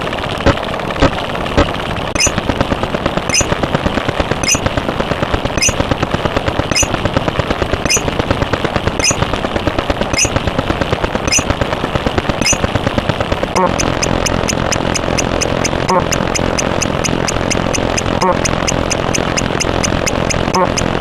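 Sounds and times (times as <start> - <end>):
slow clicks: 2.2 - 2.4, 3.3 - 3.5, 4.4 - 4.7, 6.7 - 7.0, 7.9 - 8.1, 9.0 - 9.2, 10.2 - 10.4, 11.3 - 11.5, 12.4 - 12.6, 13.6 - 21.0.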